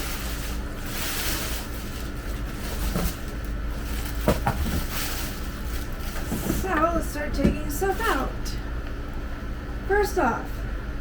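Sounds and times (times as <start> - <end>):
cardboard box rustling and scraping: 0.0 - 8.3.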